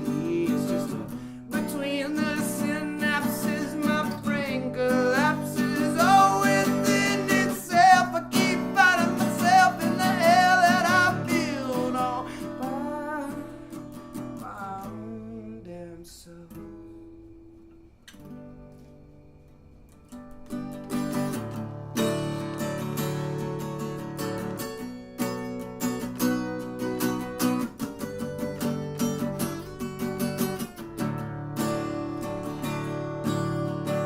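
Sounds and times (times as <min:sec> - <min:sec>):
person singing wordless melody: 0:00.0 - 0:13.7, 0:14.4 - 0:16.9
acoustic guitar strumming: 0:00.0 - 0:34.0.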